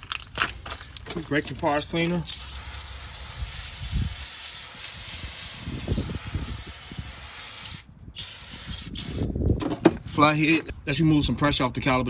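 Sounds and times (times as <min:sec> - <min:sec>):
aerosol spray hissing: 0:02.2 - 0:09.3.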